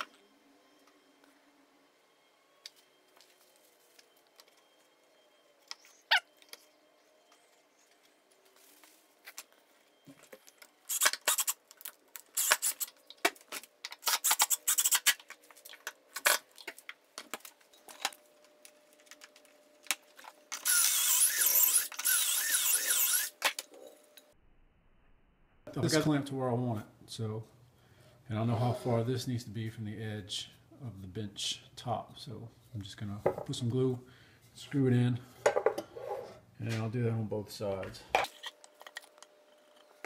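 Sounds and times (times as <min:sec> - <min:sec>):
drill-driver running: 0:20.6 - 0:23.4.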